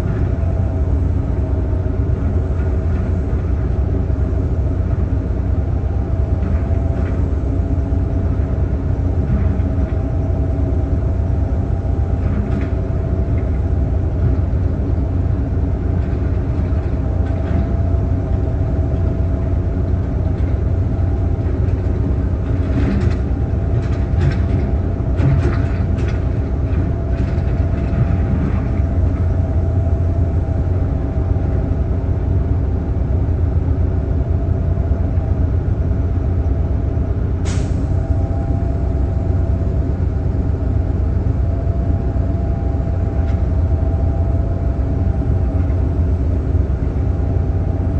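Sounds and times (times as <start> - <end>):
heavy diesel engine droning: 0.0 - 47.9.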